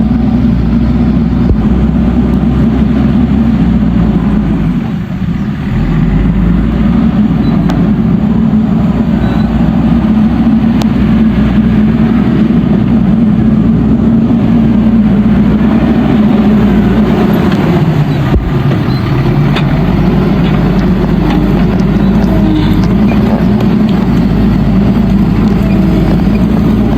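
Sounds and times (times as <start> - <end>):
diesel engine under load: 0.0 - 26.9
faint clicks: 18.7 - 24.6.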